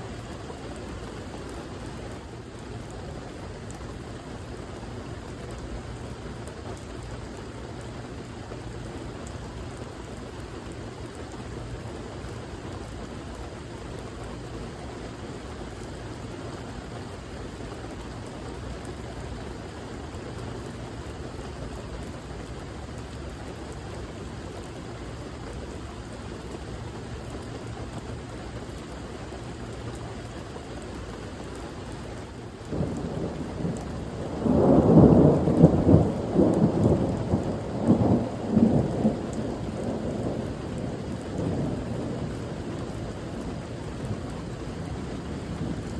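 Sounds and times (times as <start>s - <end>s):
steady rain: 0.0s - 45.9s
thunder rumbling: 32.6s - 45.9s.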